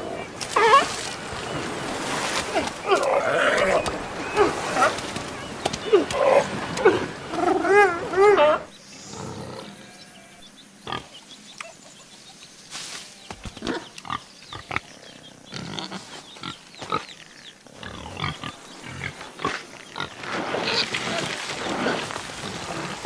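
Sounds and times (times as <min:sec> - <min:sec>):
animal calls and clicks: 0:02.2 - 0:08.5, 0:13.3 - 0:17.6.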